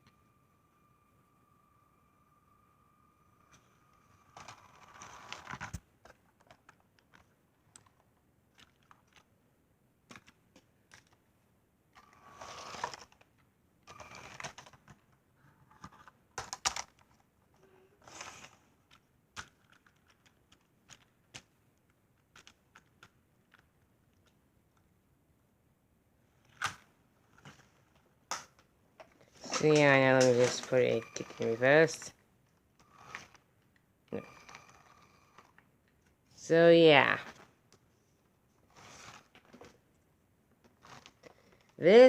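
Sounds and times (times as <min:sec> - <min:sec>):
plastic toy pieces clicking: 0:15.7 - 0:17.2, 0:18.1 - 0:24.4
rustling and clattering: 0:26.3 - 0:36.4, 0:37.1 - 0:41.8.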